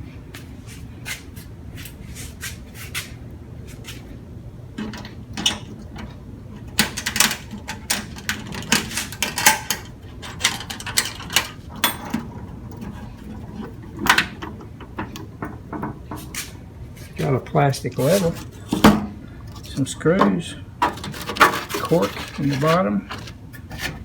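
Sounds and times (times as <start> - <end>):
loose contents rattling: 4.8 - 16.4, 17.1 - 24.0
metal toolbox clicks and clatter: 6.7 - 15.6, 20.8 - 24.0.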